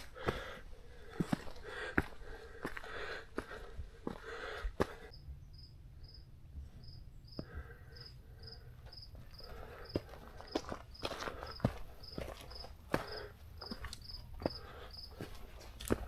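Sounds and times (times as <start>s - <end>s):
footsteps and rustling on trail: 0.0s - 5.1s, 6.6s - 16.0s
cricket chirping: 5.1s - 16.0s.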